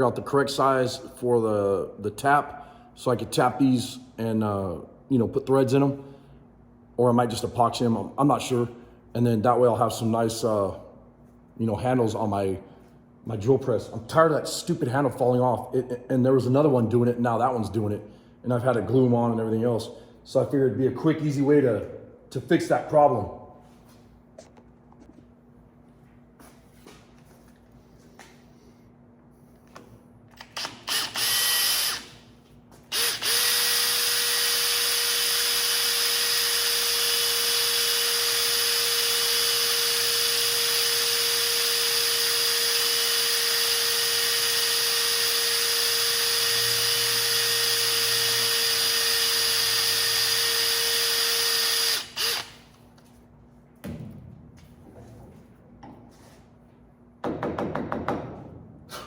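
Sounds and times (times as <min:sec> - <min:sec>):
drill bit drilling through ball: 0:30.6 - 0:32.0, 0:32.9 - 0:52.6
drill press motor running: 0:32.9 - 0:52.6.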